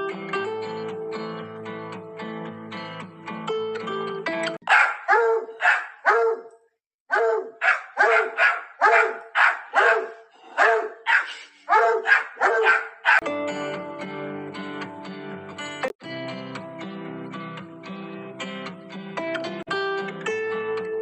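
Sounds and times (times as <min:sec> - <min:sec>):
guitar music: 0:00.0 - 0:04.8, 0:12.1 - 0:21.0
dog barking: 0:04.6 - 0:06.5, 0:07.1 - 0:13.3.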